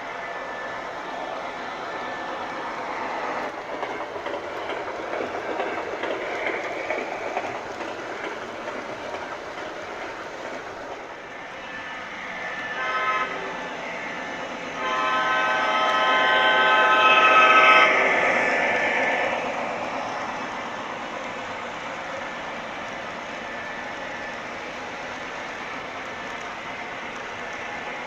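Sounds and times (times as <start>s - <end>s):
cars rolling on track: 0.0s - 28.0s
model locomotive engine rumble: 0.0s - 28.0s
locomotive horn blast: 11.6s - 18.0s.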